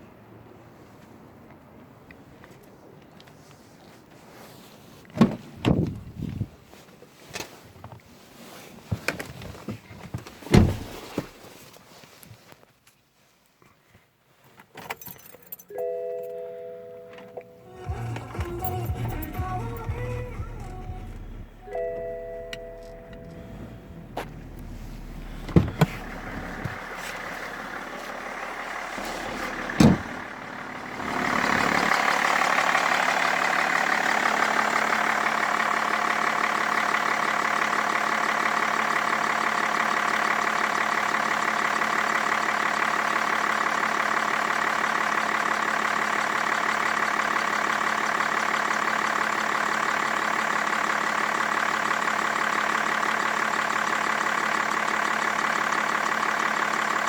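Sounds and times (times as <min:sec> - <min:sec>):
diesel engine starting and idling: 0:15.8 - 0:57.0.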